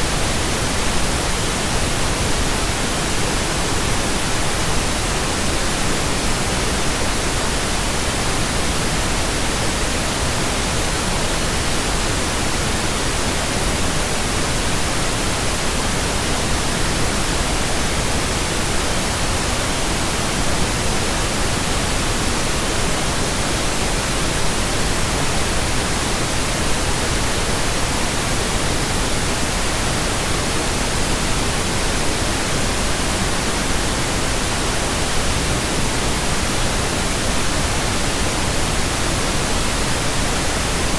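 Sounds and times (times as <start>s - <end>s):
steady pink noise hiss: 0.0s - 40.9s.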